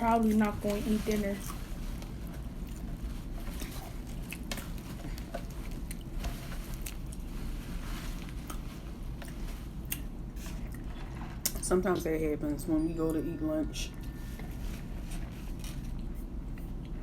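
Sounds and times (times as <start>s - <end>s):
low hum: 0.0s - 17.0s
person chewing fried chicken: 2.1s - 10.9s.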